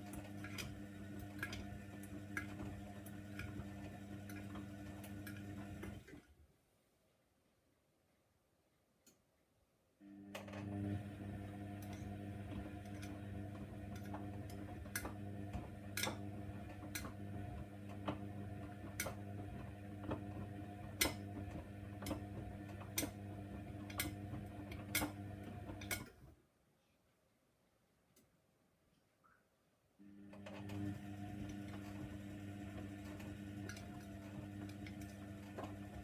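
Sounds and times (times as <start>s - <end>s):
washing machine motor humming: 0.0s - 6.2s, 10.0s - 26.2s, 30.0s - 36.0s.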